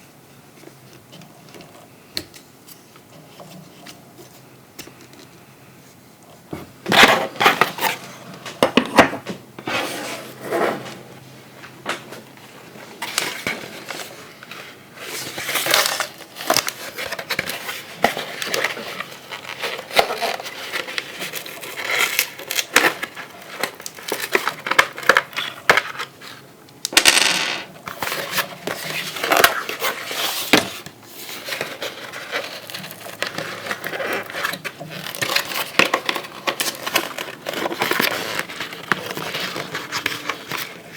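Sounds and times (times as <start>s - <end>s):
packaging crinkling: 15.1s - 26.2s, 27.9s - 40.9s.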